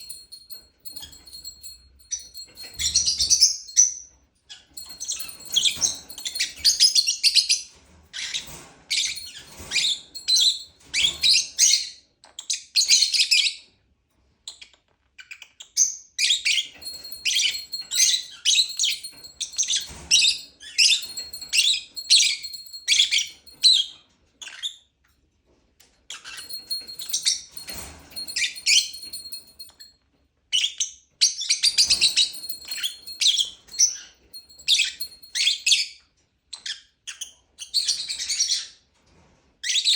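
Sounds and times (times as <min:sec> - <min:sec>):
lovebird chirping: 0:00.0 - 0:04.0, 0:04.7 - 0:07.5, 0:08.4 - 0:11.6, 0:16.6 - 0:23.8, 0:26.3 - 0:29.9, 0:31.6 - 0:35.8.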